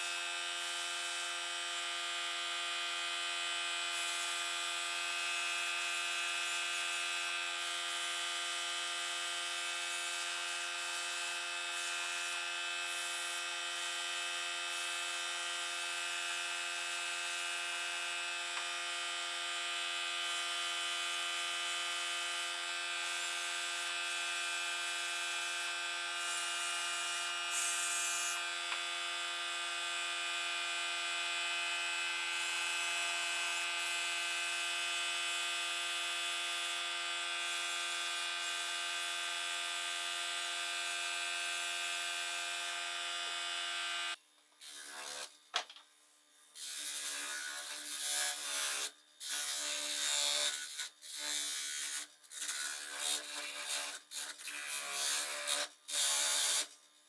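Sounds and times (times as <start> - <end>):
small electric motor whining: 0.0 - 45.3.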